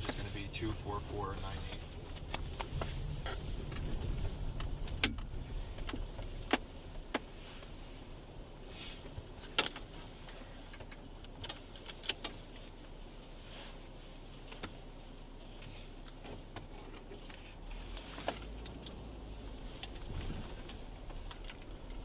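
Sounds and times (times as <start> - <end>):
car engine rumble: 0.0 - 22.0
sharp clicks and knocks: 1.7 - 7.3.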